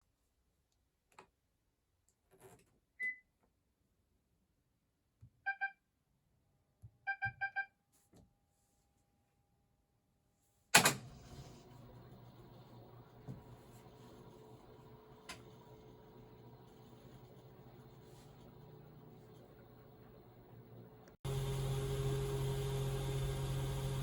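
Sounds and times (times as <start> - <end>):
washing machine control beeps: 3.0 - 3.3, 5.5 - 5.8, 7.1 - 7.7.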